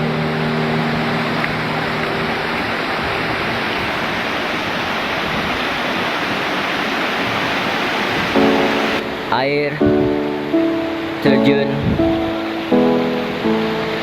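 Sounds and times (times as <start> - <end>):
background music: 0.0 - 3.1, 8.4 - 14.0
waterfall rushing: 0.0 - 14.0.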